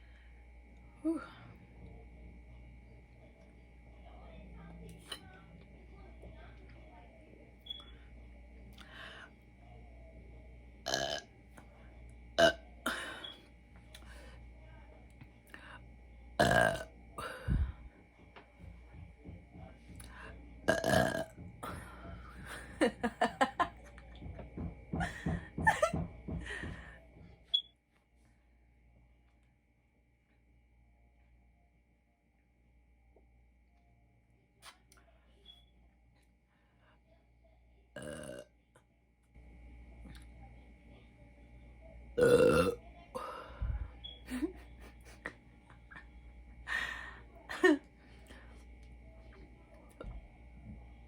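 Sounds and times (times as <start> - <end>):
woman burping: 10.9 - 11.2, 12.4 - 13.4, 16.4 - 17.4, 20.7 - 21.3, 38.0 - 38.4, 42.2 - 43.4.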